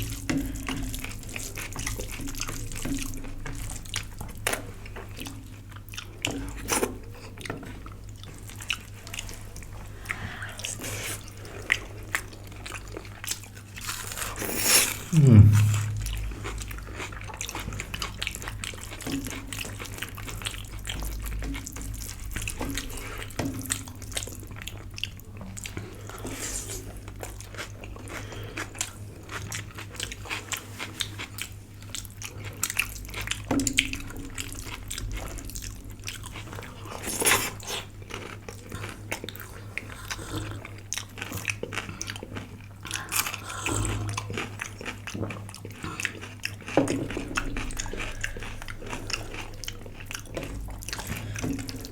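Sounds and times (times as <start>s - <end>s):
person chewing and crunching food: 0.0s - 51.9s
low hum: 14.6s - 16.9s.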